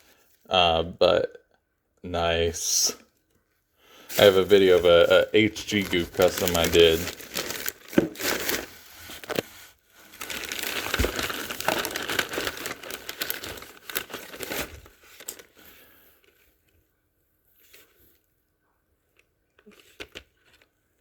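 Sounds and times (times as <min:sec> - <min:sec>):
packaging crinkling and rustling: 0:04.1 - 0:16.8, 0:19.6 - 0:21.0.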